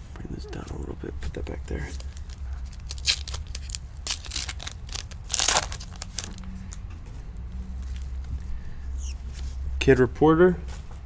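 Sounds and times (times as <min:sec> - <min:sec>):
low steady hum: 0:00.0 - 0:11.0
foil pack tearing and crinkling: 0:01.8 - 0:06.7.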